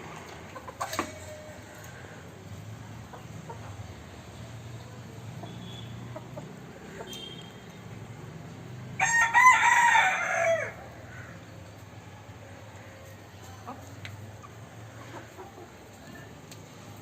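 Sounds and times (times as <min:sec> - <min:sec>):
hens clucking: 0:00.3 - 0:02.1, 0:03.0 - 0:03.9, 0:12.8 - 0:16.1
rooster crowing: 0:09.0 - 0:11.3.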